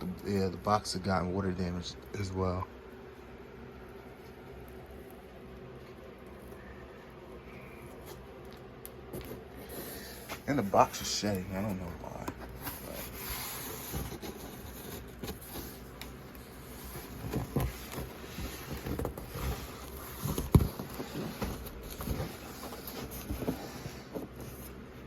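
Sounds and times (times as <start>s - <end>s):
cardboard box rustling and scraping: 9.2s - 24.8s.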